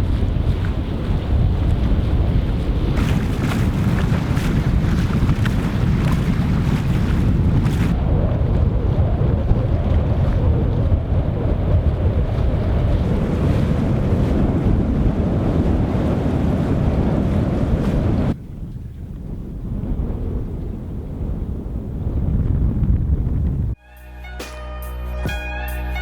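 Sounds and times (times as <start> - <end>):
water rushing along boat hull: 0.0 - 18.4
wind buffeting microphone: 0.0 - 23.8.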